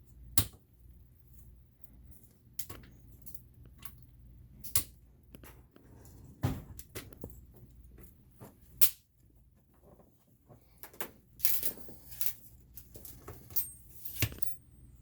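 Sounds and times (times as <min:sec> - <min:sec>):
tools and parts clicking and knocking: 0:10.8 - 0:14.6.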